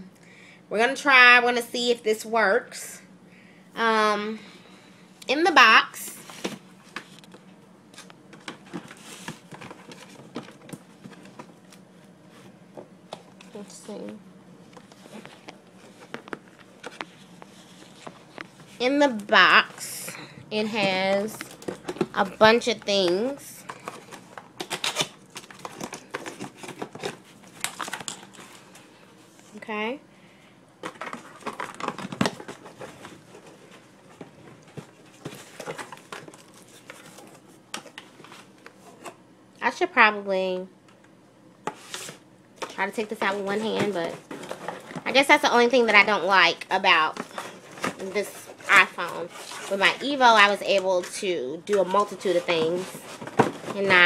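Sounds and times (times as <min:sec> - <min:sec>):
packaging rustling and scraping: 0:06.1 - 0:14.1, 0:14.7 - 0:29.7, 0:30.8 - 0:39.2, 0:41.6 - 0:54.0.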